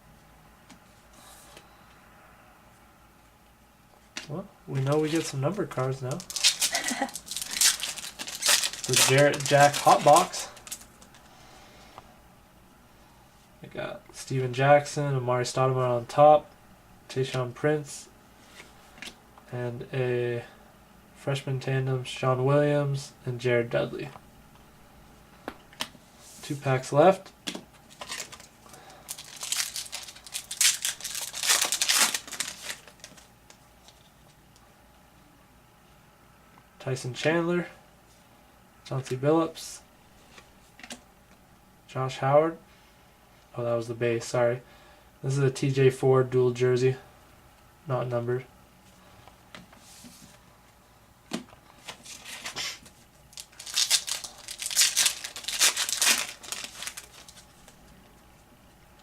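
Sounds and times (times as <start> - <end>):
card pack wrapper tearing: 6.1 - 10.9, 27.9 - 33.3, 52.1 - 57.8.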